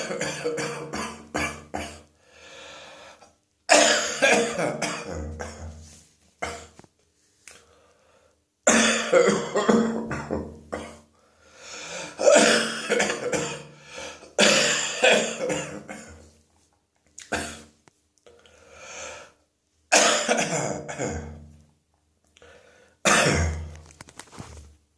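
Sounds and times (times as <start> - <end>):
person coughing wetly: 0.0 - 2.1, 3.7 - 5.8, 6.4 - 6.8, 8.7 - 11.1, 12.1 - 13.7, 14.3 - 16.2, 17.2 - 17.7, 19.9 - 21.4, 23.0 - 23.7.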